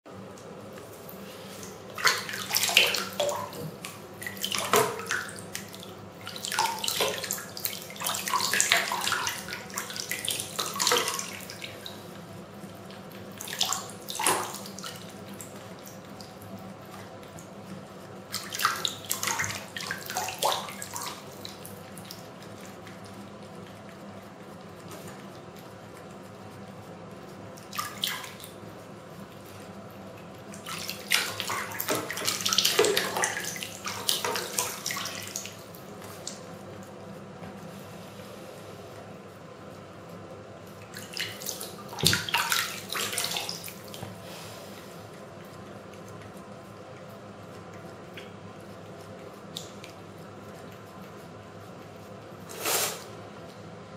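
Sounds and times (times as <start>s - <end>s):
water splashing: 1.1s - 12.2s, 12.9s - 16.4s, 18.2s - 23.1s, 27.6s - 28.6s, 30.5s - 36.5s, 40.8s - 44.6s
water running from a tap: 1.5s - 12.2s.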